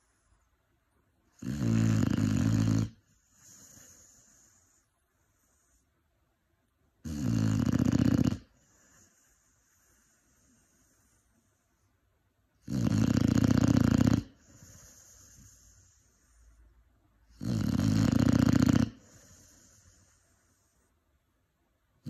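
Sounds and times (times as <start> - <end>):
puppy snoring: 1.3 - 5.8, 7.0 - 11.6, 12.6 - 16.5, 17.2 - 20.9
dog breathing softly: 3.0 - 6.0, 8.5 - 12.0, 13.7 - 16.8, 18.8 - 21.0.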